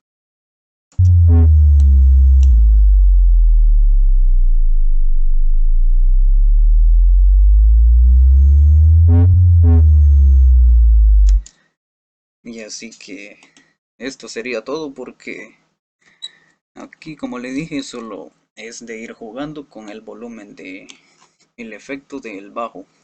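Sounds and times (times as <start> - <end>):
deep synthesized sub-bass: 1.0 - 11.5
swept tone gliding: 5.7 - 11.3.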